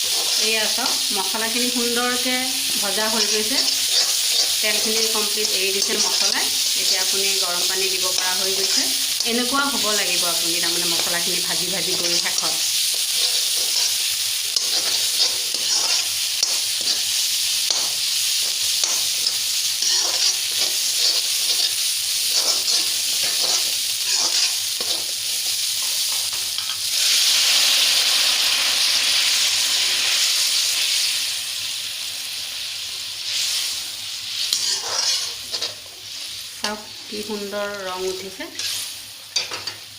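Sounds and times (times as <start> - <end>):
paste sizzling in hot oil: 0.0 - 39.9
spatula scraping pan: 3.0 - 25.1, 34.5 - 35.9, 38.5 - 39.8.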